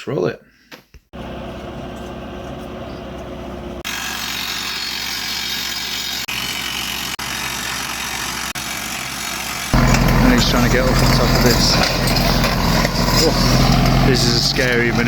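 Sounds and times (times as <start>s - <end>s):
heavy machinery roaring: 7.0s - 15.0s.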